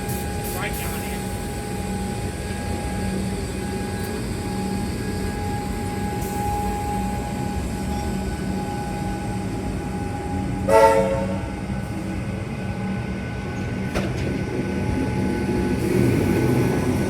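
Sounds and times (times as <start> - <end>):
electric train hum and rumble: 0.0 - 17.0
train horn blast: 10.6 - 12.0.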